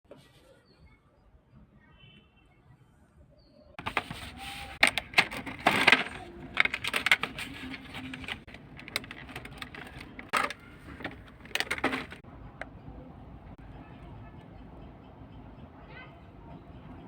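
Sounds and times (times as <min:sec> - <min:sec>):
packaging crinkling: 0:03.8 - 0:12.2
plastic packaging clicks and rattles: 0:03.8 - 0:12.2.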